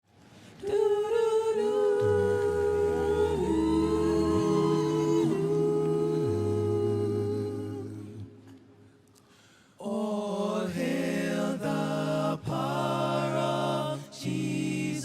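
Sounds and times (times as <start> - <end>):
vocal group humming chords: 0.6 - 8.7
low bass voice humming: 2.0 - 8.2.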